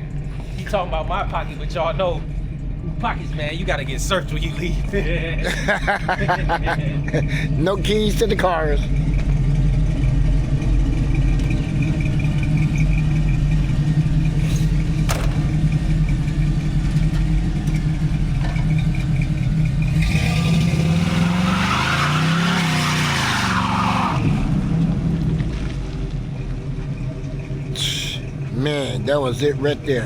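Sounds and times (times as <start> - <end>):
car engine revving: 0.0 - 30.0
tyres screeching: 18.6 - 24.6.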